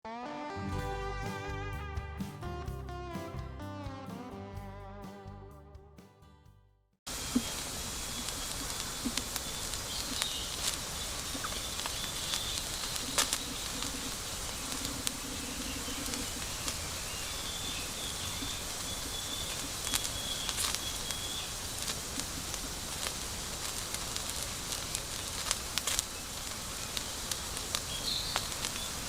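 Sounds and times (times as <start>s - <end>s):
sharp crackling pops: 7.1s - 29.0s
steady hiss: 7.1s - 29.0s
faint high bird calls: 7.2s - 22.6s, 25.1s - 29.0s.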